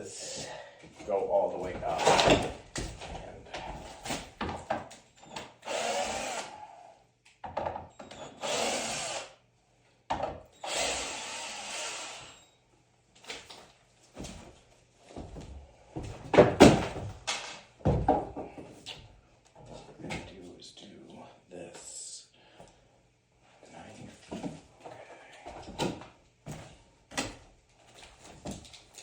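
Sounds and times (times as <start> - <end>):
power drill running: 5.6 - 6.6, 8.2 - 9.4, 10.6 - 12.6.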